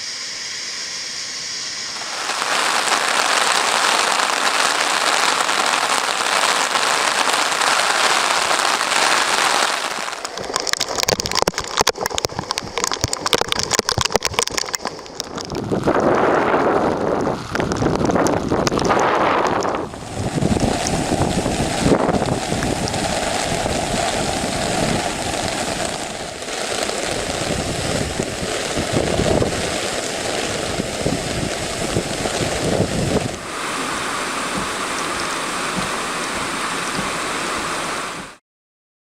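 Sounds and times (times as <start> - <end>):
storm water rushing: 1.8 - 38.4
wind buffeting microphone: 15.2 - 34.8.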